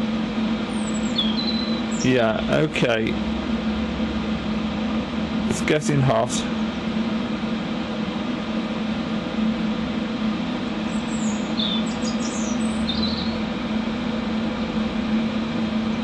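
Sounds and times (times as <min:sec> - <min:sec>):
constant low hum: 0:00.0 - 0:16.0
torch flame hissing: 0:00.7 - 0:03.4
bird chirping: 0:00.8 - 0:02.1, 0:11.0 - 0:13.4.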